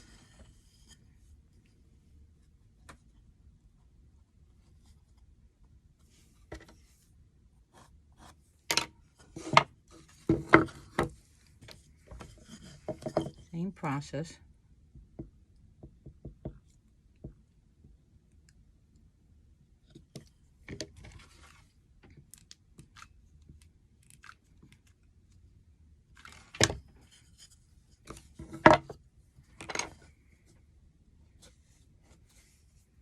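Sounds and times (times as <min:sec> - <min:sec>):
wooden planks clicking and scraping: 0:08.7 - 0:13.4, 0:26.2 - 0:29.0.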